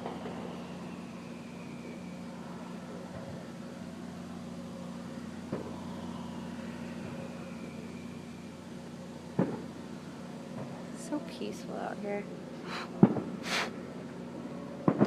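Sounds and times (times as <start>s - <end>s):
faint falling whistle: 0.0s - 2.8s
steady low hum: 0.0s - 15.0s
distant firework bang: 9.3s - 9.7s, 13.0s - 13.6s.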